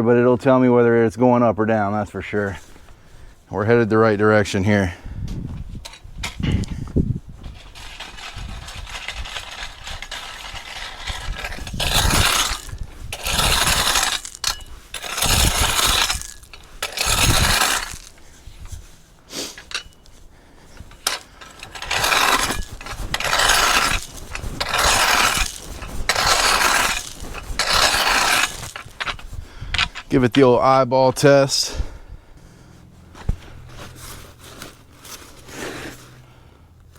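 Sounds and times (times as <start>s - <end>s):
gravel being raked: 7.4s - 31.8s, 32.5s - 36.4s.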